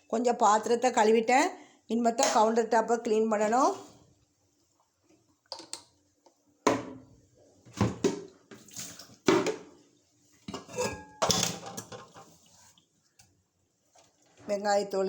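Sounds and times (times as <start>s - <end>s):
pots and pans clattering: 9.3s - 9.7s, 10.5s - 12.5s.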